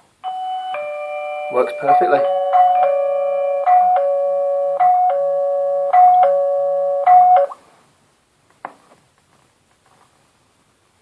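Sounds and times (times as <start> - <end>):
electronic doorbell chime: 0.2 - 7.6.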